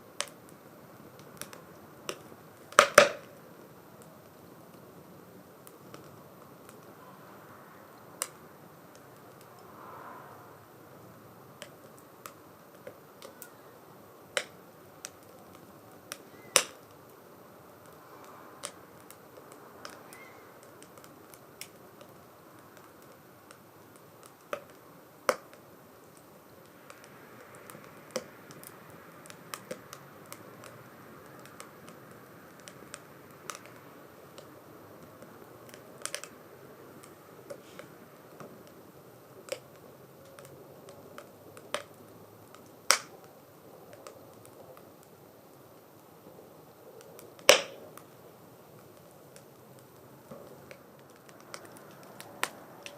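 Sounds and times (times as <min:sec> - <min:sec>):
burning wood popping: 0:00.0 - 0:52.9
wood fire crackling in stove: 0:00.0 - 0:52.9.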